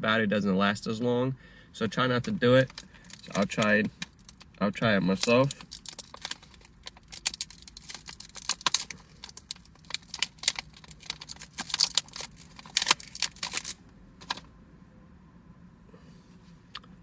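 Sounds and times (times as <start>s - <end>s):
plastic packaging crinkling and tearing: 2.6s - 14.4s.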